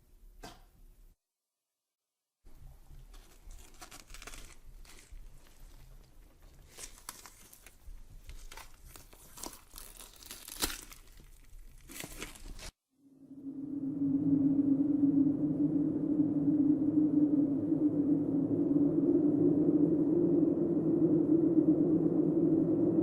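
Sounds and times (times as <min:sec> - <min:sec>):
crackling and tearing noises: 0:03.1 - 0:12.8
low rumble: 0:13.0 - 0:23.0.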